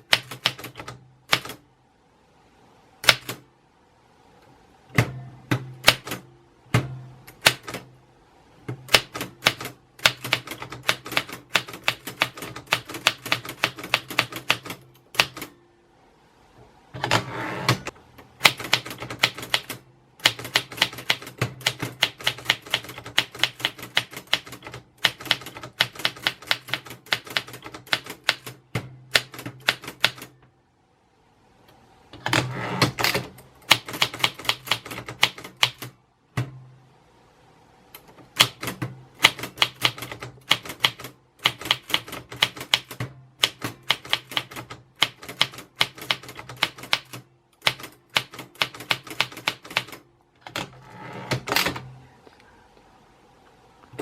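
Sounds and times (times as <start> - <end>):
typewriter rasping: 32.2 - 35.9
typewriter keys clacking: 38.4 - 50.7.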